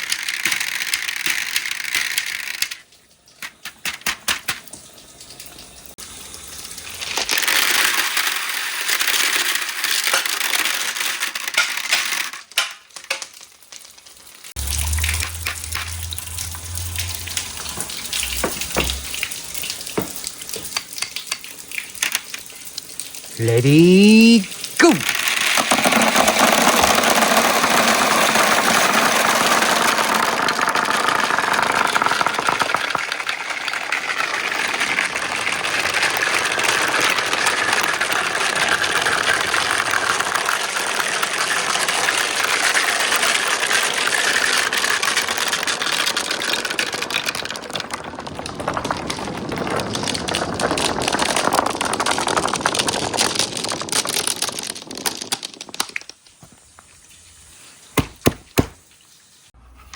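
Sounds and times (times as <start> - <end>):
marbles rolling and clicking: 0.0 - 4.6, 6.9 - 56.9
water rushing: 14.6 - 20.7.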